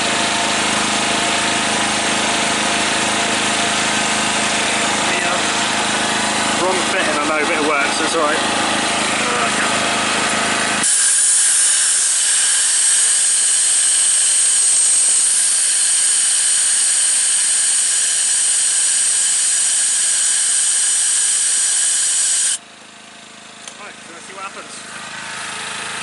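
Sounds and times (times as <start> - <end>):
compressed air hissing from hose: 10.8 - 22.6.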